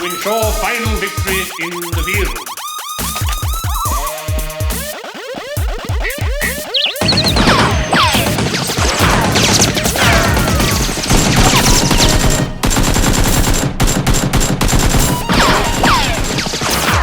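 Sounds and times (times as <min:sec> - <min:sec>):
rapid gunfire: 0:04.6 - 0:17.0.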